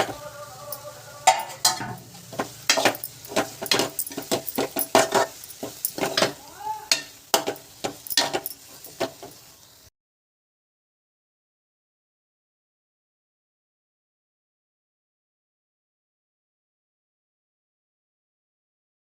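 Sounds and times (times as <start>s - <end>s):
spoon scraping a pan: 0.0s - 9.5s
faint sizzling: 0.0s - 9.9s.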